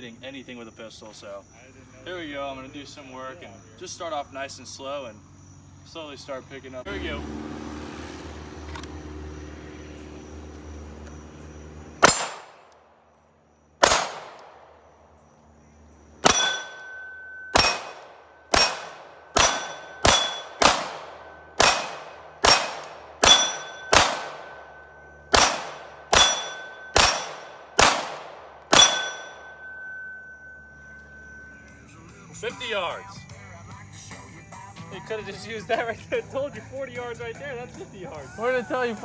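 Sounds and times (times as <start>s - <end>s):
pistol shots: 12.0s - 12.8s, 13.8s - 14.8s, 16.2s - 29.7s
steel plate clanging: 16.3s - 20.8s, 21.5s - 24.6s, 25.4s - 27.6s, 28.7s - 30.3s.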